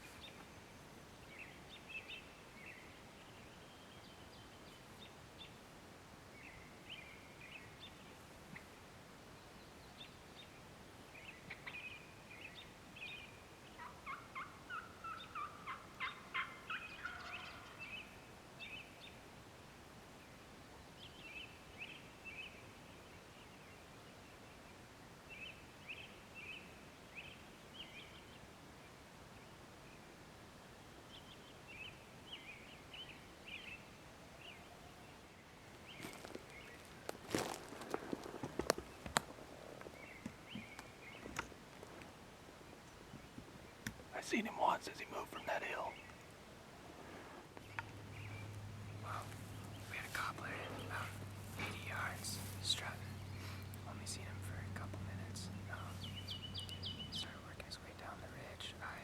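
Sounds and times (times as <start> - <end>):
turkey gobbling: 13.8 - 17.8.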